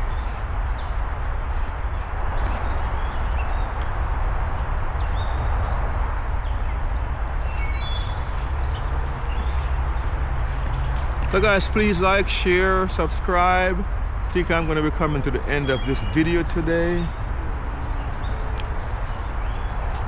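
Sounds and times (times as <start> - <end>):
footsteps on woodland trail: 0.0 - 2.9, 7.2 - 17.0, 18.0 - 20.0
wind rumble on microphone: 0.0 - 20.0.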